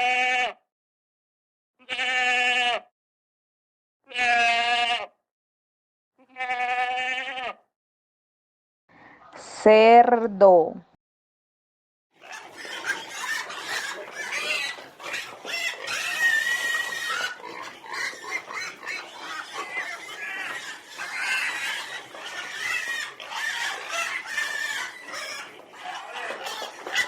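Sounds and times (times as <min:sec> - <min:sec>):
pigs squealing: 0:04.1 - 0:05.1, 0:12.2 - 0:27.0.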